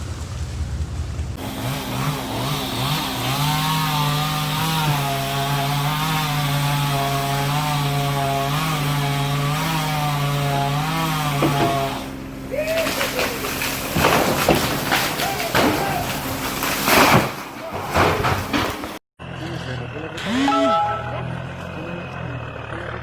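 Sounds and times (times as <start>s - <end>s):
chainsaw revving: 1.4s - 17.0s.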